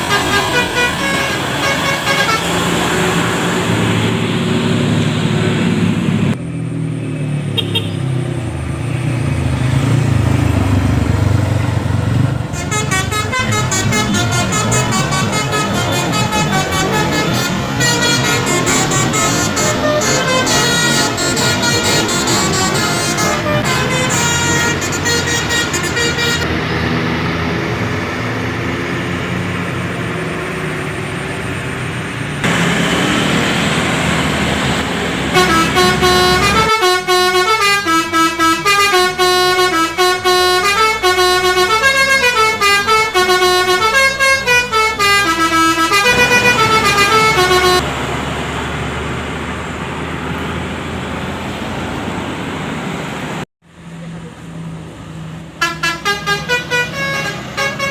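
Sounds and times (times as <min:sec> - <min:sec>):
multi-tone bus horn tune: 0:00.0 - 0:04.0, 0:07.5 - 0:08.1, 0:12.4 - 0:26.7, 0:35.3 - 0:47.9, 0:55.6 - 0:57.9
engine noise: 0:00.0 - 0:57.9
traffic noise: 0:00.0 - 0:57.9.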